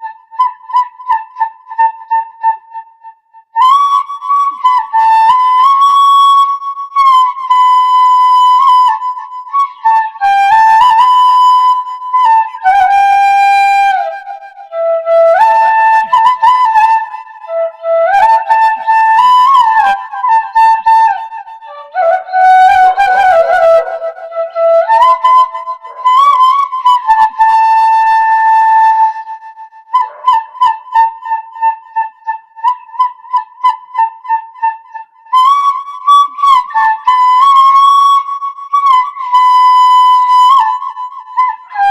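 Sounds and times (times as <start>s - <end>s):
bamboo flute solo melody: 0.0s - 41.9s.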